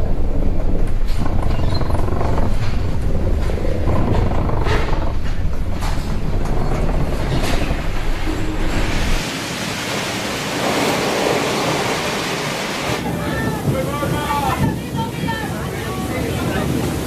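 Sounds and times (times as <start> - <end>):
deep buffeting storm rumble: 0.0 - 17.0
hiss of wind and spray: 8.8 - 17.0.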